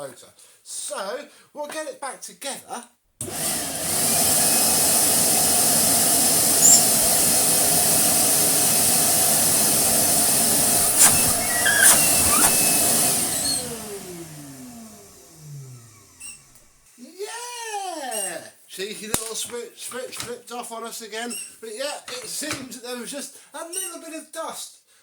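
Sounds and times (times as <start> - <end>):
vacuum cleaner motor running: 3.2 - 16.9.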